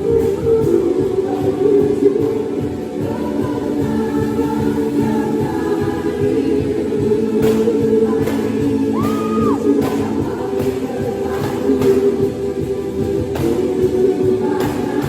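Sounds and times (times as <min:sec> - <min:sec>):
group singing gospel song: 0:00.0 - 0:15.0.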